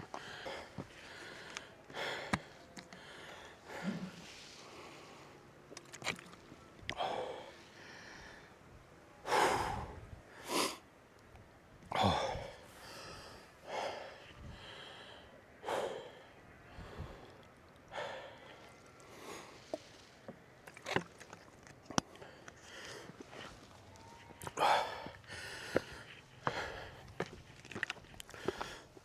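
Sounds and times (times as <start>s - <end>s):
man breathing hard: 0.1s - 5.4s, 11.9s - 19.8s, 24.4s - 27.3s, 28.3s - 29.0s.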